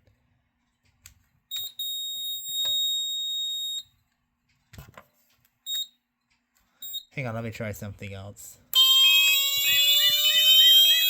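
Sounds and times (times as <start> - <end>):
high-pitched alarm sounder: 8.8 - 11.0.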